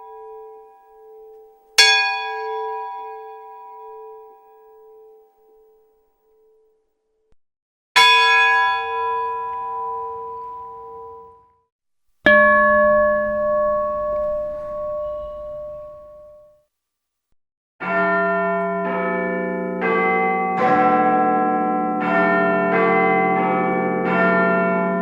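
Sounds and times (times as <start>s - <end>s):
large bell ringing: 0.0s - 5.2s, 12.3s - 16.4s, 18.0s - 25.0s
peal of several bells: 0.0s - 5.8s, 8.0s - 11.5s, 12.3s - 16.4s, 17.9s - 25.0s
lower-pitched bell ringing: 12.3s - 16.4s.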